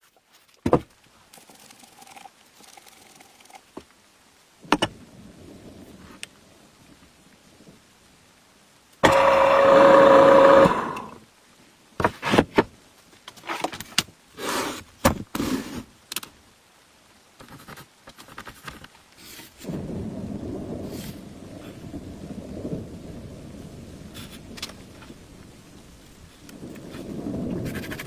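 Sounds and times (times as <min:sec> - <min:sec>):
electric motor humming: 0:09.0 - 0:11.2
steady noise: 0:09.0 - 0:11.2.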